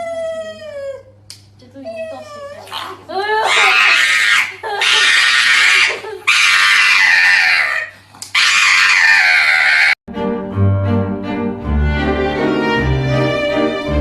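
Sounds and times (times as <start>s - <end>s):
animal screaming: 2.6s - 10.0s.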